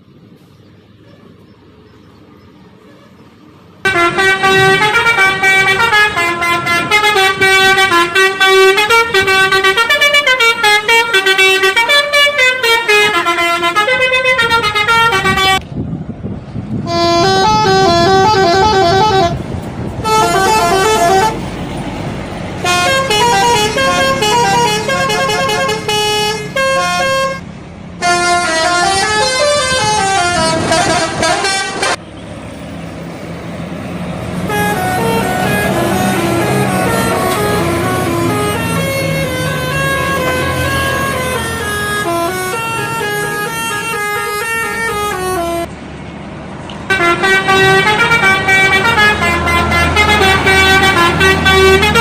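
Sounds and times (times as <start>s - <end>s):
bus horns playing melodies: 3.8s - 15.7s, 16.8s - 32.1s, 34.2s - 45.7s, 46.8s - 52.0s
low engine rumble: 13.1s - 52.0s.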